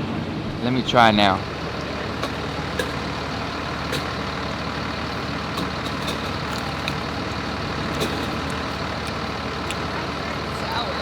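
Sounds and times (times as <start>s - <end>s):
heavy engine idling: 0.1s - 11.0s.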